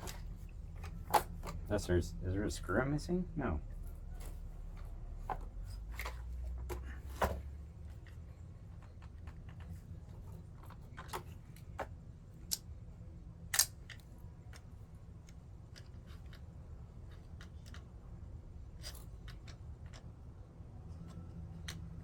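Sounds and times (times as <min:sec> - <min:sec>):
steady low hum: 0:00.0 - 0:22.0
hands and tools clicking on plastic: 0:13.6 - 0:18.1, 0:18.8 - 0:22.0.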